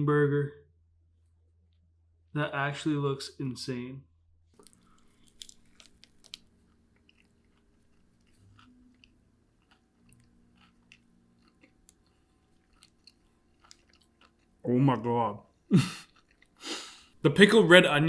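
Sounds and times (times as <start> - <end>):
person chewing food: 4.6 - 14.6, 15.4 - 17.2.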